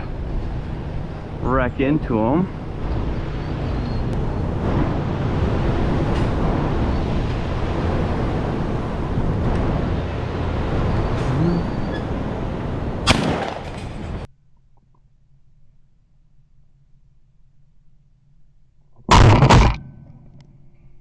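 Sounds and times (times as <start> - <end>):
steady low rumbling: 0.0 - 14.3, 19.0 - 21.0
shotgun blast: 13.0 - 13.8, 19.1 - 20.0.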